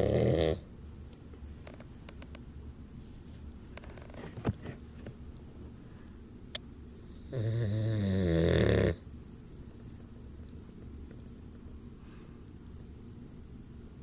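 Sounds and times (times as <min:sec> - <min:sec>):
dog snoring: 0:00.0 - 0:00.6, 0:07.1 - 0:09.0.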